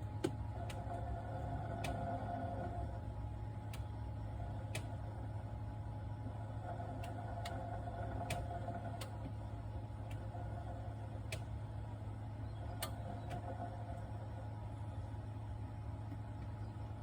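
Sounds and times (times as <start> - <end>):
sharp refrigerator clicks: 0.0 - 1.0, 7.0 - 9.4, 11.2 - 11.6
refrigerator humming: 0.0 - 17.0.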